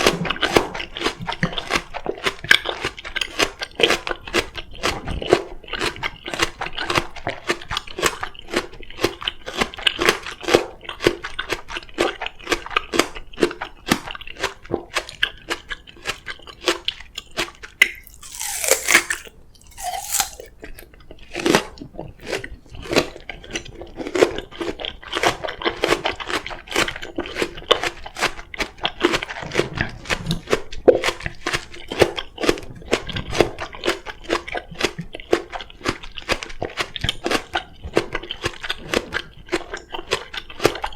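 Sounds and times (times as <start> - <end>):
wet chewing: 0.0 - 40.9
crunching bites: 17.8 - 20.8.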